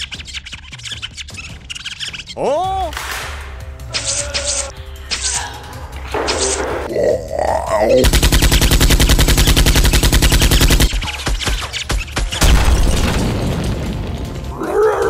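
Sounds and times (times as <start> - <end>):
automatic gunfire: 8.0 - 11.6.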